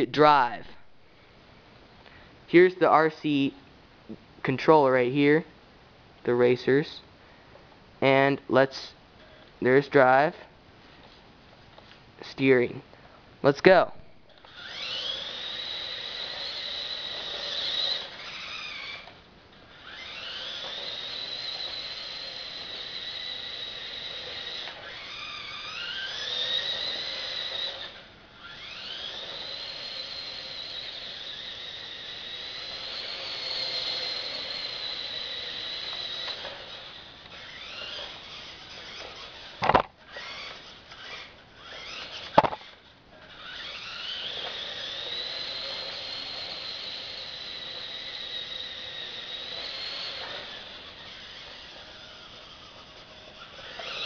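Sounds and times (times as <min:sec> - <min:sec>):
toy motors whining: 0:13.6 - 0:54.0
sharp knocks: 0:42.4 - 0:42.6.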